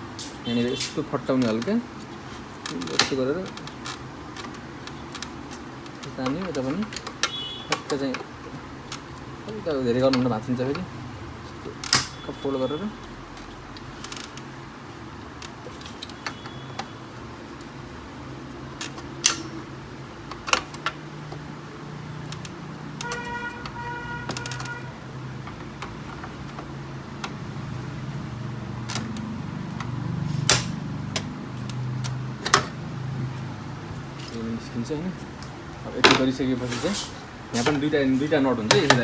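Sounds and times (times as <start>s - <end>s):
plastic parts clicking and knocking: 0.6s - 33.5s, 35.2s - 36.6s, 37.5s - 39.0s
sharp plastic snaps: 11.7s - 12.3s, 18.8s - 21.5s, 22.1s - 27.5s, 28.8s - 32.8s.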